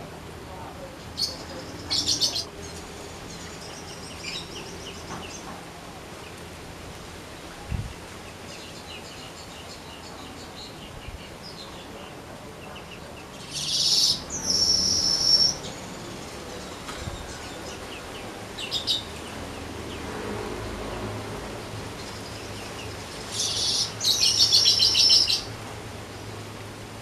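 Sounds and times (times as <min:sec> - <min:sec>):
bird singing: 0:01.2 - 0:05.5, 0:08.5 - 0:19.4, 0:22.0 - 0:25.5.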